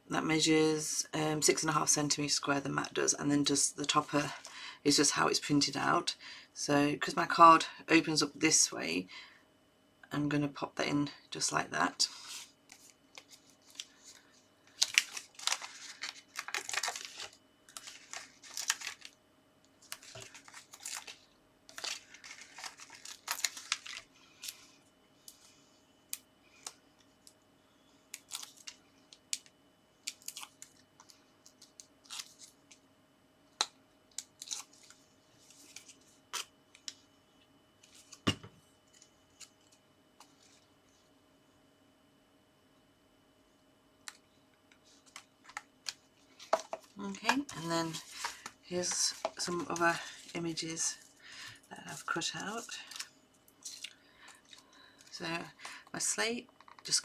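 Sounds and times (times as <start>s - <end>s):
paper rustling and crinkling: 12.1s - 25.6s, 30.0s - 32.8s, 34.1s - 37.0s, 37.8s - 38.2s, 44.7s - 55.8s.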